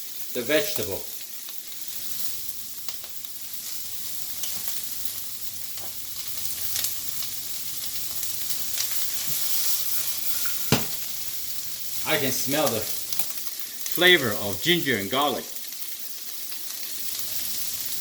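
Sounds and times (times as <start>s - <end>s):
vegetables sizzling in a wok: 0.0s - 18.0s
knock: 10.7s - 10.9s.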